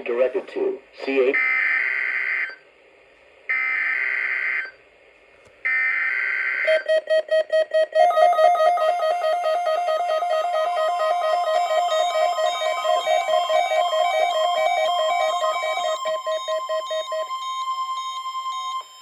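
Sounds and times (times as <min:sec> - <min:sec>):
pulsing attention tone: 0:06.7 - 0:19.0
warbling digital data tones: 0:10.8 - 0:19.0.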